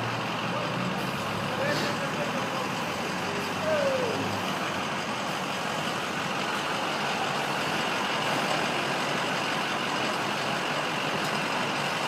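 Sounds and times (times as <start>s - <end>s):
vehicle engine and road noise: 0.0s - 12.0s.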